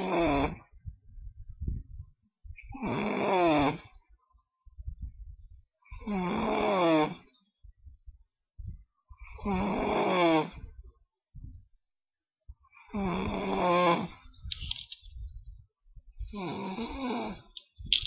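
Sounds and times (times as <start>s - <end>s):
person snoring: 9.2s - 10.6s, 12.8s - 14.3s, 16.3s - 17.6s.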